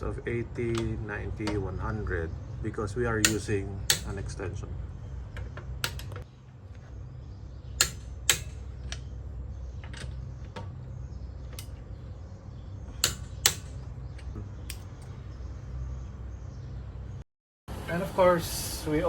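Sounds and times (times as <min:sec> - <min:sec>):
steady low hum: 0:00.0 - 0:19.0
torque wrench clicking: 0:03.2 - 0:04.2.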